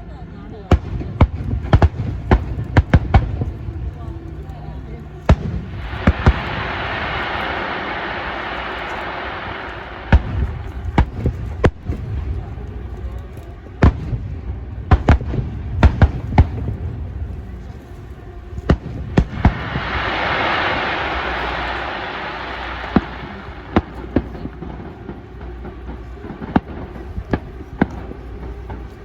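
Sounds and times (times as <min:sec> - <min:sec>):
fireworks hiss: 0:05.0 - 0:29.0
fireworks bangs: 0:05.3 - 0:12.6, 0:18.6 - 0:28.2.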